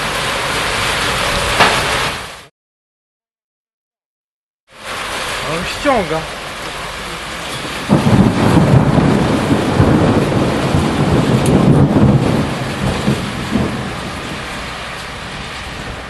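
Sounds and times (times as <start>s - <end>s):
heavy rain: 0.0s - 2.5s, 4.7s - 16.0s
thunderclap and rolling rumble: 6.8s - 16.0s.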